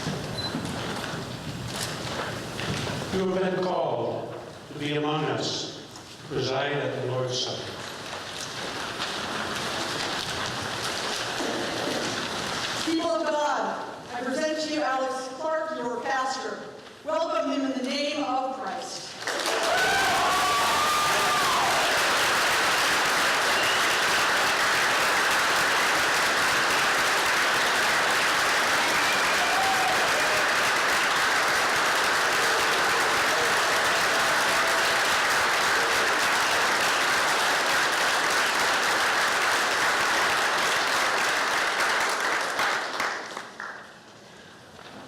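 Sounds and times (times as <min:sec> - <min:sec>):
congregation applauding: 0:00.0 - 0:02.4, 0:07.6 - 0:12.9, 0:19.2 - 0:44.4.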